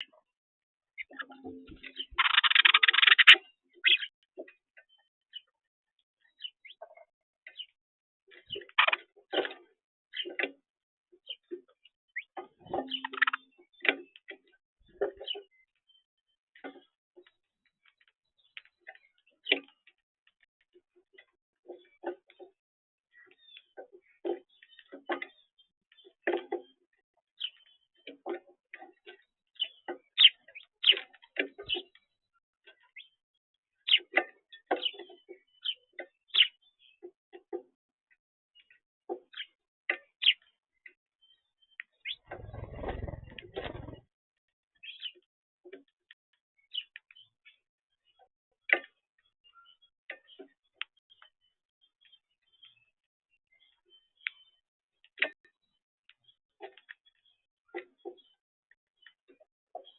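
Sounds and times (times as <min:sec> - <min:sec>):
birds pecking and tapping: 0:01.0 - 0:05.5, 0:06.2 - 0:22.6, 0:23.2 - 0:33.2, 0:33.9 - 0:44.1, 0:56.0 - 0:59.9.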